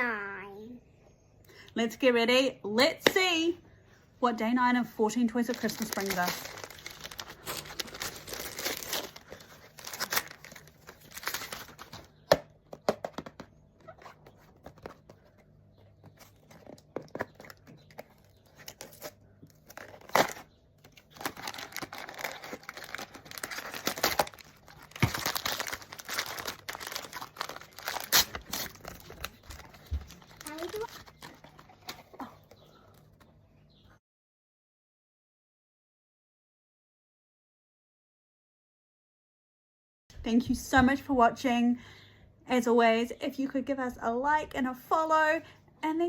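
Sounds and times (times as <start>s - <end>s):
packaging crinkling and tearing: 5.5s - 12.4s, 16.2s - 32.3s.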